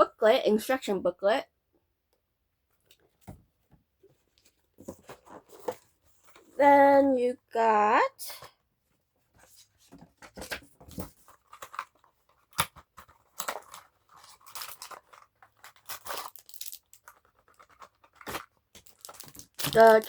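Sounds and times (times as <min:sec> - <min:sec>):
packaging rustling and crinkling: 0:09.6 - 0:20.0.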